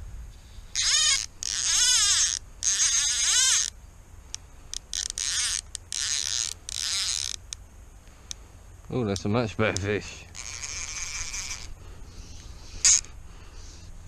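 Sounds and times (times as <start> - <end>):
fishing reel ratchet buzzing: 0.7 - 3.8, 4.7 - 7.6, 10.3 - 11.8.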